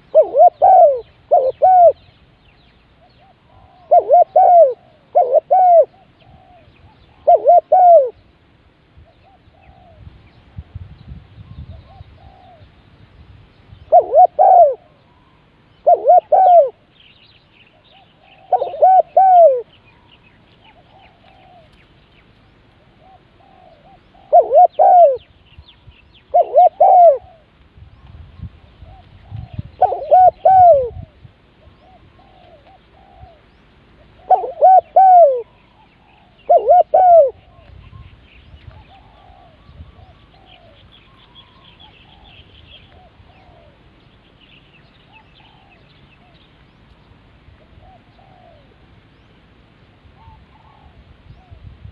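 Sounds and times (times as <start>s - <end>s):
dove cooing: 0.0s - 2.1s, 3.0s - 8.2s, 9.0s - 10.2s, 11.5s - 12.8s, 13.8s - 17.0s, 17.7s - 21.9s, 22.8s - 25.4s, 26.2s - 27.6s, 28.6s - 44.0s, 44.8s - 46.4s, 47.6s - 48.9s, 50.1s - 51.7s
faint dove coos: 0.0s - 2.2s, 3.0s - 8.2s, 9.0s - 10.8s, 11.4s - 12.8s, 13.8s - 16.9s, 17.7s - 21.9s, 22.8s - 44.0s, 45.1s - 46.5s, 47.6s - 48.9s, 50.1s - 51.9s.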